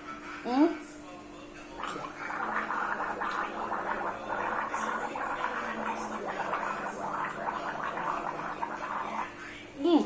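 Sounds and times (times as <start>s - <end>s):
person gargling: 1.8s - 9.4s.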